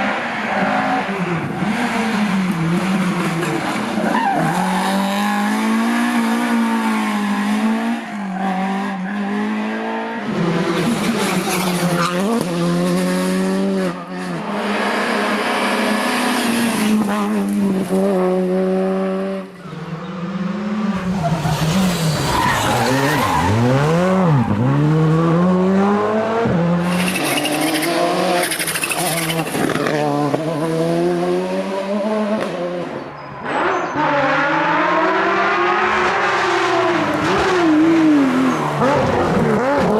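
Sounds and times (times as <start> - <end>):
rally car engines revving: 0.0 - 39.9
tyres squealing and skidding: 3.9 - 5.4, 11.1 - 12.5, 21.0 - 24.9, 26.8 - 29.8, 37.4 - 39.9.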